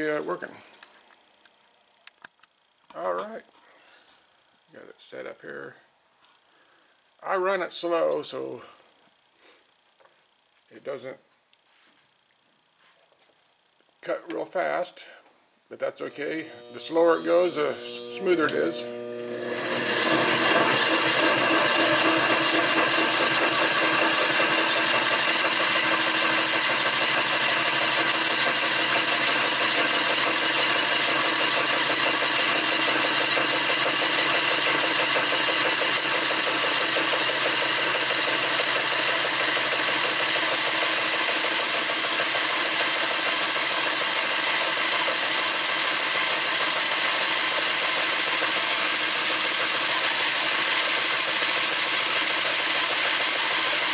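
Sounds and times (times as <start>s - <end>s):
band saw cutting wood: 16.0s - 53.9s.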